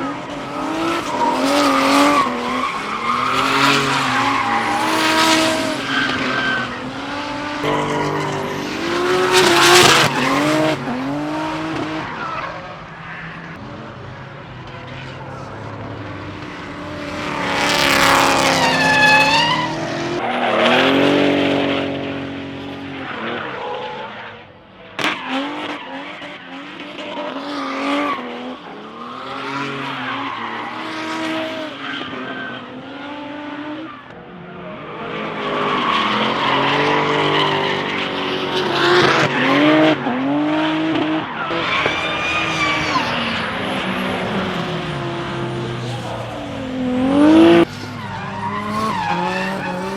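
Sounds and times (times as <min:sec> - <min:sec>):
race cars revving past: 0:00.0 - 0:23.6, 0:25.0 - 0:34.0, 0:34.7 - 0:49.9
tyres skidding and squealing: 0:00.0 - 0:49.9
sharp bang: 0:07.6 - 0:12.0.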